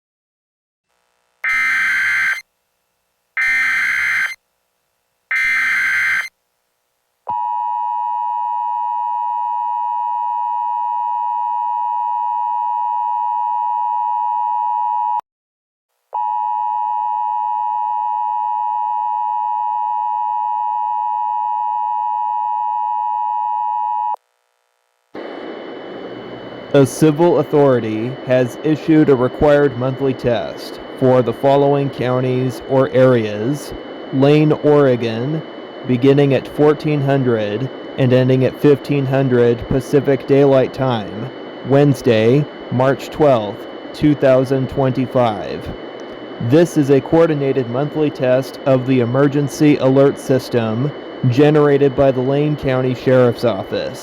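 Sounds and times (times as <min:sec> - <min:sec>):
two-tone attention signal: 0:01.4 - 0:02.4, 0:03.4 - 0:04.4, 0:05.3 - 0:06.3
warbling data bursts: 0:01.4 - 0:02.4, 0:03.4 - 0:04.4, 0:05.3 - 0:06.3.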